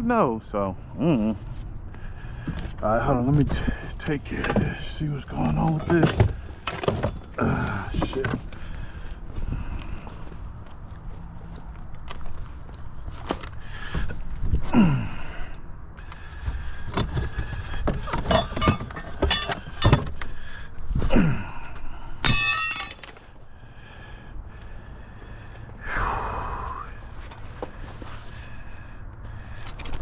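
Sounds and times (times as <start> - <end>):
knocks and scrapes of repair work: 2.4 - 8.6, 16.0 - 23.4.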